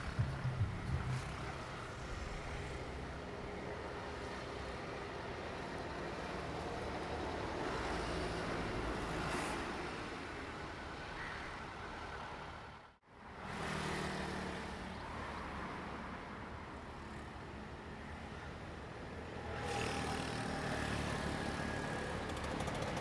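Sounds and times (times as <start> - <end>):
train running on rails: 0.0 - 6.4.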